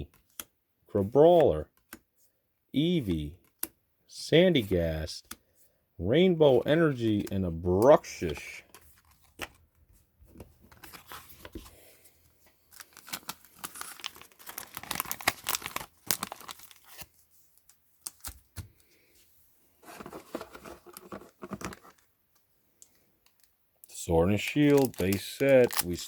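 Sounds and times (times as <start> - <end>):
foil wrapper crinkling and tearing: 12.8 - 17.1, 24.3 - 26.0.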